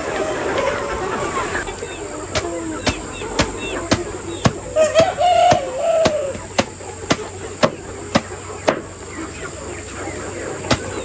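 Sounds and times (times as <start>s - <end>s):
rhythmic chopping knocks: 2.3s - 9.0s, 10.6s - 11.0s.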